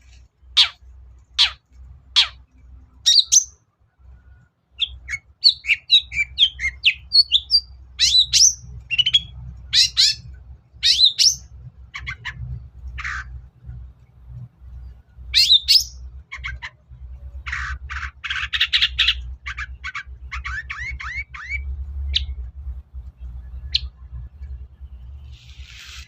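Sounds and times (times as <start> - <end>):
shrike singing chattering song: 0.5 - 1.6, 3.0 - 3.6, 4.8 - 12.4
bird harsh calls: 0.5 - 2.4, 3.0 - 3.6, 10.8 - 13.3, 15.3 - 16.8, 17.4 - 22.3
low hum: 6.0 - 26.0.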